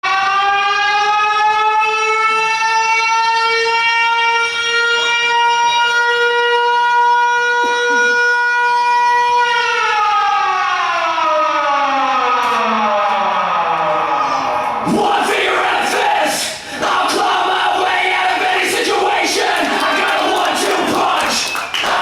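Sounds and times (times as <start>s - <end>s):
siren wailing: 0.0s - 16.2s.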